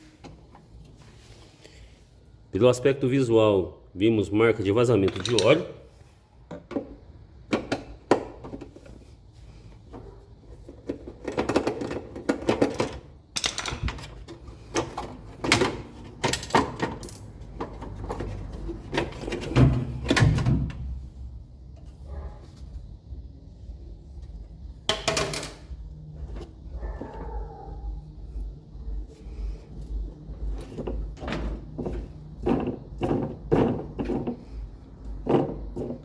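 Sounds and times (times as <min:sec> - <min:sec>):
metallic clicks and knocks of tools: 0:05.0 - 0:05.6, 0:11.5 - 0:17.4.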